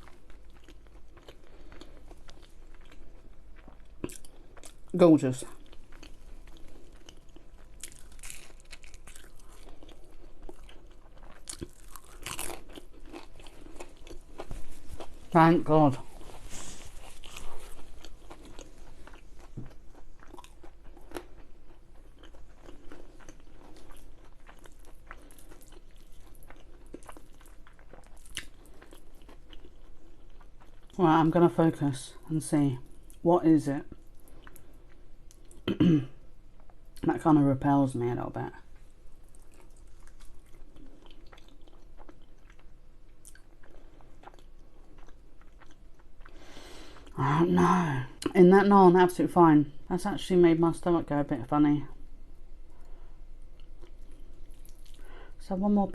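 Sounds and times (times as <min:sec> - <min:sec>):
chewing with soft crunches: 0:00.0 - 0:31.0, 0:33.8 - 0:35.7, 0:38.5 - 0:47.2, 0:52.4 - 0:55.4.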